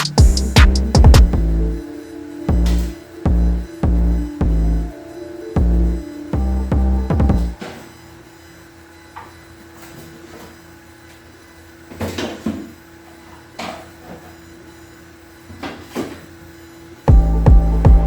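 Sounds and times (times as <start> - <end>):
faint hum: 0.0 - 7.6.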